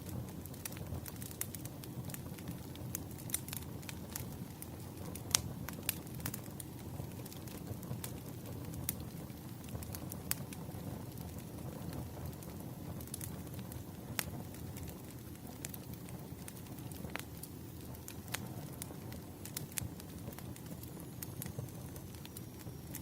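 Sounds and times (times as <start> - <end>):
burning wood crackling and popping: 0.0 - 23.0
low rumble of flames: 0.0 - 23.0.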